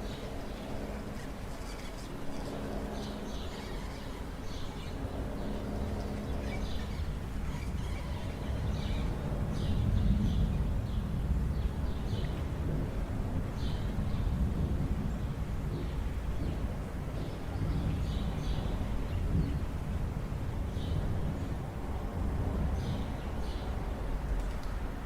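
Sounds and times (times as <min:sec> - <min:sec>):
birds chirping: 0:00.0 - 0:12.4
wind: 0:00.0 - 0:25.0
thunder rumbling: 0:07.4 - 0:23.2.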